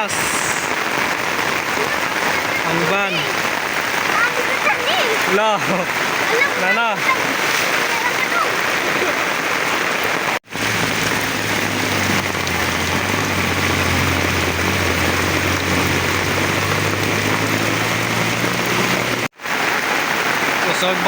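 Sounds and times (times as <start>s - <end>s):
heavy rain pouring: 0.0s - 21.0s
low engine hum: 10.5s - 19.3s.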